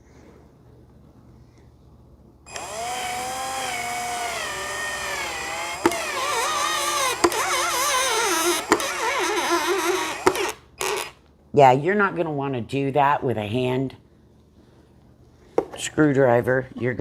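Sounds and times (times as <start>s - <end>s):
power drill motor whine: 2.5s - 11.2s
sharp clicks: 5.8s - 8.0s.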